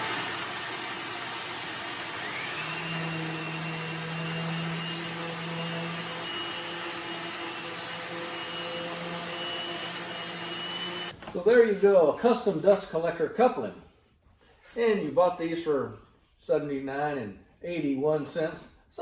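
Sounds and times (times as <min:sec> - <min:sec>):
power sander motor whine: 0:00.0 - 0:11.1
shop vacuum running: 0:00.0 - 0:11.2.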